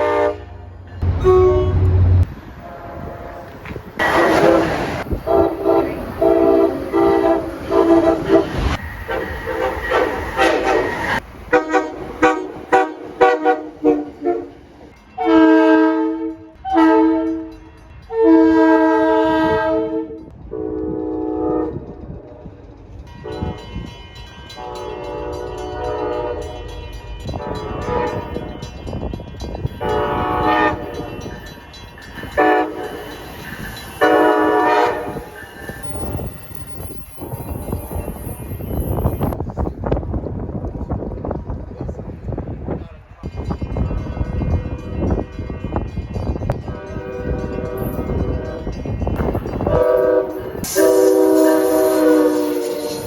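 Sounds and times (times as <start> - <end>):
locomotive air horn blasts: 0.0 - 14.6, 15.2 - 22.4, 24.6 - 31.3, 32.4 - 33.2, 34.0 - 36.2, 46.6 - 48.8, 49.4 - 53.0.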